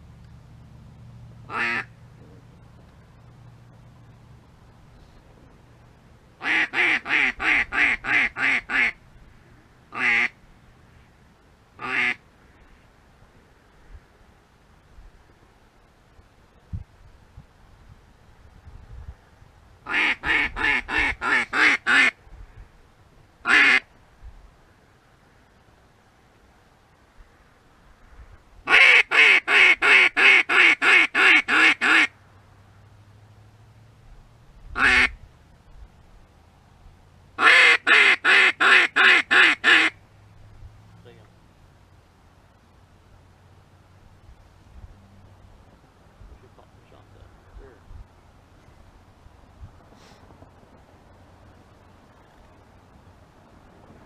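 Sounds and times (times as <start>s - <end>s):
duck call quacks: 1.5s - 1.9s, 6.4s - 9.0s, 9.9s - 10.3s, 11.8s - 12.2s, 19.9s - 22.2s, 23.4s - 23.8s, 28.7s - 32.1s, 34.8s - 35.2s, 37.4s - 40.0s.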